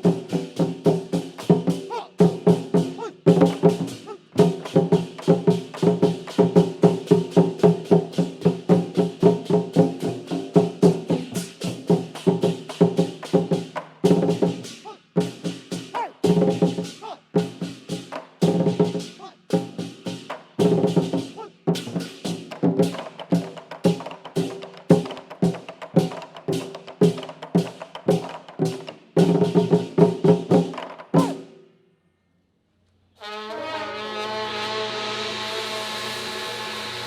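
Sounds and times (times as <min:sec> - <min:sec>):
festive brass music: 0:33.1 - 0:37.0.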